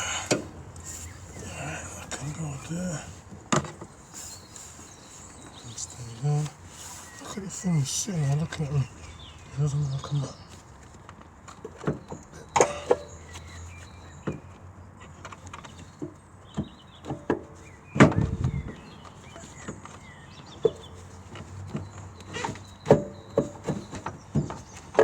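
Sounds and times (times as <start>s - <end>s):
metal clunks and knocks: 0.0s - 0.8s, 3.5s - 3.9s, 11.5s - 13.5s, 15.2s - 25.0s.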